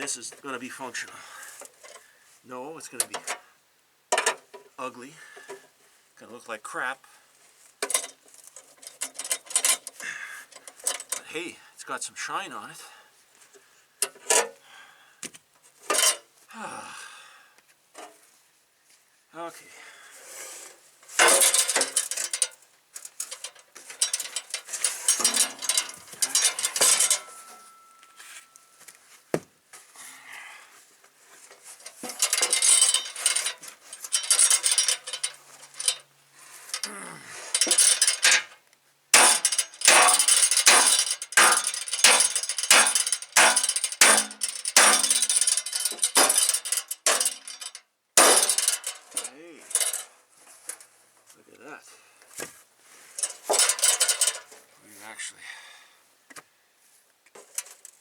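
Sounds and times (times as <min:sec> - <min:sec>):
sledgehammer striking sheet metal: 0:39.2 - 0:45.3, 0:48.2 - 0:48.7.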